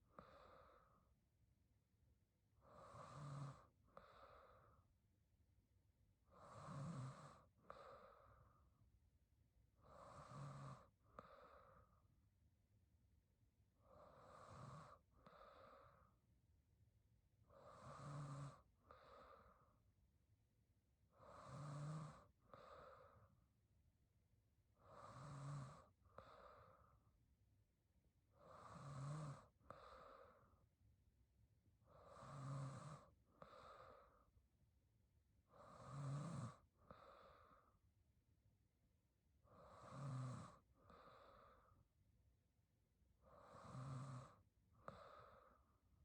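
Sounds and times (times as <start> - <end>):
woman snoring quietly: 0.0 - 1.1, 2.5 - 4.9, 6.2 - 8.8, 9.8 - 12.0, 13.7 - 16.2, 17.4 - 19.8, 21.1 - 23.5, 24.7 - 27.2, 28.3 - 30.7, 31.8 - 34.3, 35.4 - 37.8, 39.4 - 41.9, 43.2 - 45.9.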